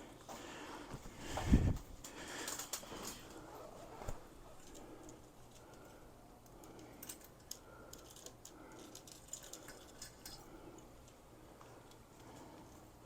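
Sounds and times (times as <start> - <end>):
small clicks and ticks: 4.6 - 12.9.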